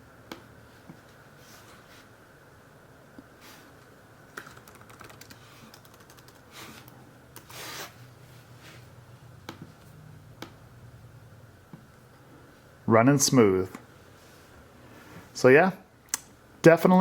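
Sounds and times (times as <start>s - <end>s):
laptop keyboard clicking: 4.4s - 6.5s.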